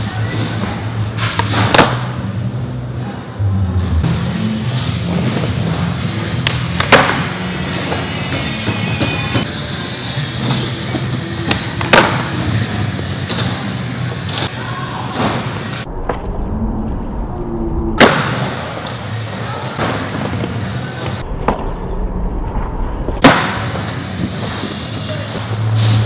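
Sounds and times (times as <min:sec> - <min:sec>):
background music: 0:00.0 - 0:14.4
skateboard impacts: 0:00.1 - 0:02.3, 0:03.8 - 0:09.5, 0:10.3 - 0:16.2, 0:18.0 - 0:21.7, 0:23.2 - 0:25.0.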